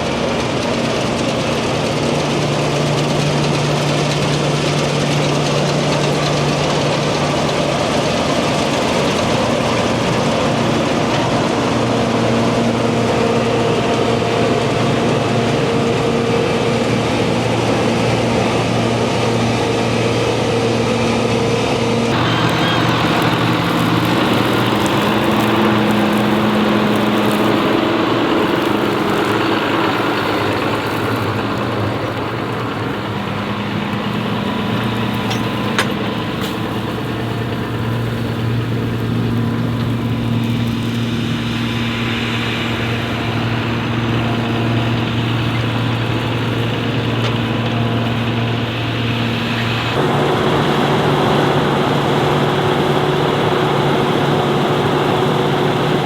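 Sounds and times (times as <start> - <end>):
diesel engine droning: 0.0 - 56.0.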